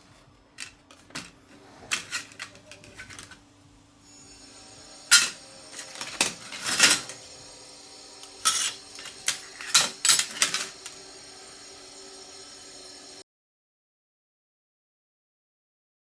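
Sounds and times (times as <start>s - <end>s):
scrap aluminium clattering on metal: 0.6s - 3.4s, 5.0s - 7.4s, 8.2s - 11.0s.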